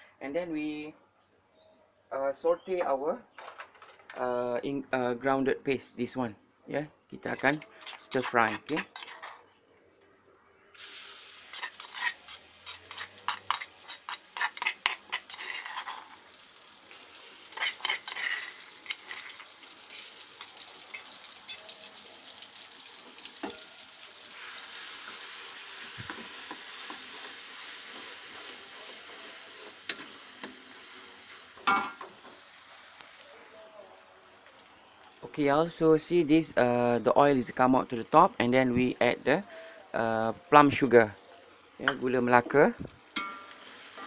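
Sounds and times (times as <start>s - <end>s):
paste sizzling in hot oil: 7.2s - 9.4s, 10.8s - 39.0s, 40.7s - 44.0s
spatula scraping a pan: 7.3s - 9.5s, 11.5s - 16.4s, 17.4s - 21.7s, 24.3s - 31.6s.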